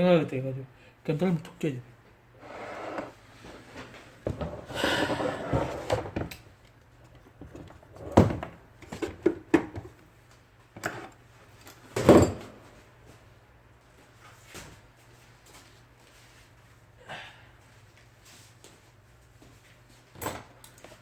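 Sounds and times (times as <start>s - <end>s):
rustling and scraping: 2.4s - 6.3s.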